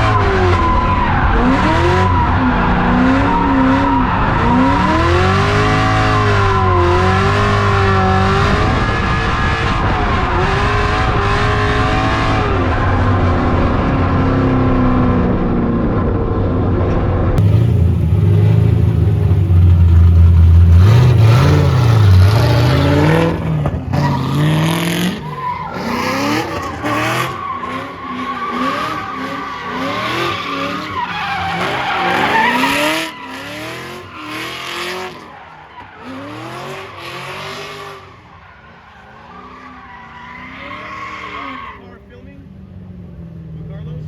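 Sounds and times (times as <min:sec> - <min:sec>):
car engine revving: 0:00.0 - 0:42.0
tyres squealing: 0:20.8 - 0:34.5, 0:39.0 - 0:41.9.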